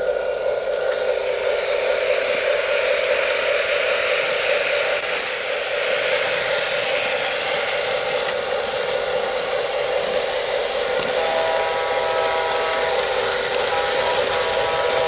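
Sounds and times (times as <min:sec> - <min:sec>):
model locomotive humming: 0:00.0 - 0:15.0
diesel horn: 0:11.1 - 0:15.0.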